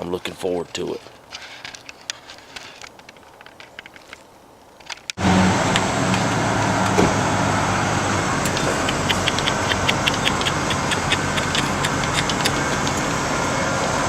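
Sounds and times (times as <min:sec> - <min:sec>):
vehicle engine humming: 0:05.2 - 0:14.0.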